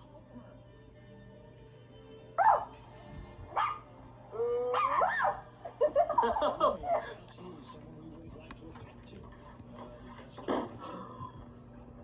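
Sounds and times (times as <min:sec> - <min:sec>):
dog yelping: 0:02.4 - 0:02.7, 0:03.6 - 0:03.8, 0:04.6 - 0:05.5
dog barking: 0:02.4 - 0:02.8, 0:03.5 - 0:03.9, 0:04.7 - 0:05.5.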